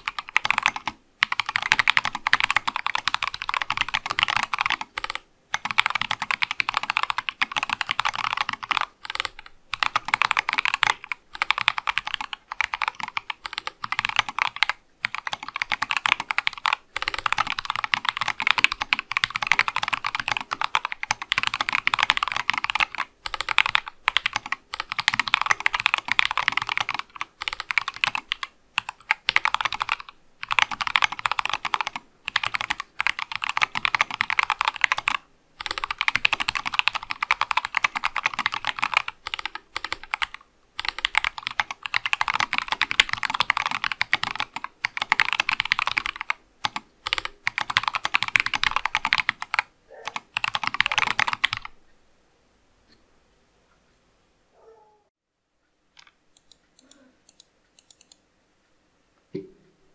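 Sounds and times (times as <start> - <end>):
fast typing on mechanical keyboard: 0.0 - 51.7.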